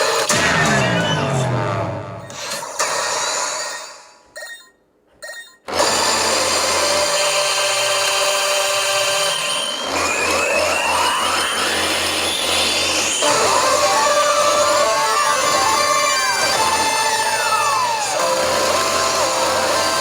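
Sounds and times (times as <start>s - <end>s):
dense electronic noise with high tone: 0.3s - 4.8s, 10.4s - 20.0s.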